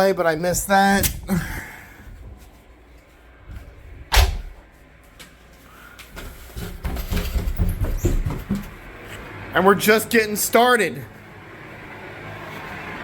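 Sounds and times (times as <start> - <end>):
low rumbling handling noise: 0.2 - 9.5.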